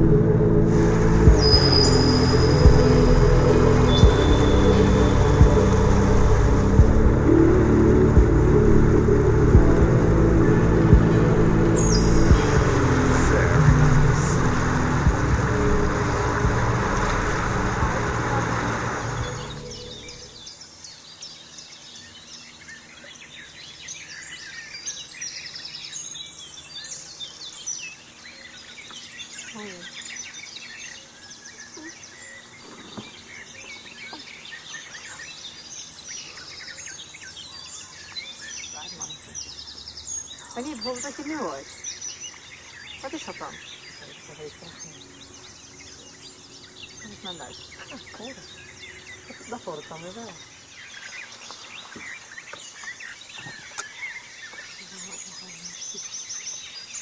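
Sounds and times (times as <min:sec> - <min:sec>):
songbirds chorus: 0:00.7 - 0:57.0.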